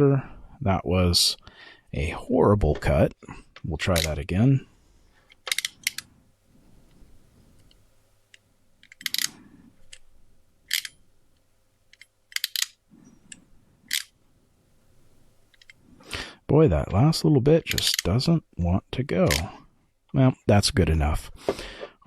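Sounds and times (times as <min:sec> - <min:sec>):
crimping tool clicks and snips: 0:11.9 - 0:12.8.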